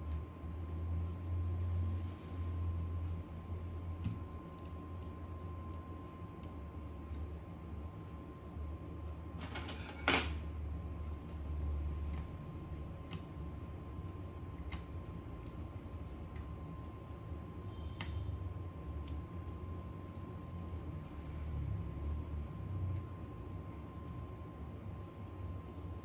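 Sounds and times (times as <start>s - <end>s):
steady low hum: 0.0s - 26.0s
clicks and taps of small parts: 13.0s - 13.3s.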